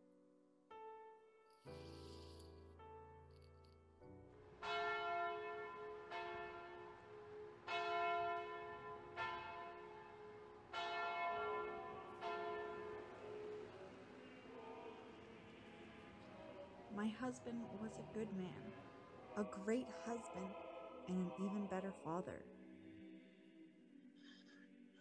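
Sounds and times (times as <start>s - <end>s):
church bell tolling: 4.6s - 13.7s.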